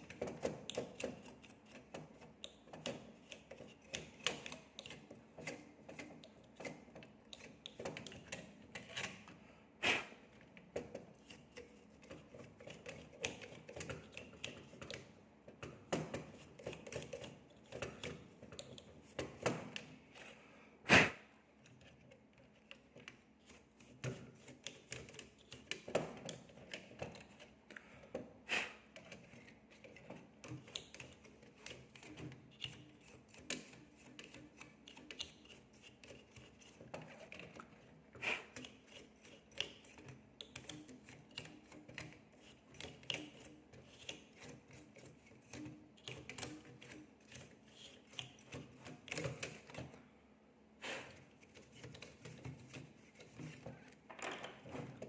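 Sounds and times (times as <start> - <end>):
small parts clicking and tapping: 38.5 - 44.6, 51.5 - 55.0.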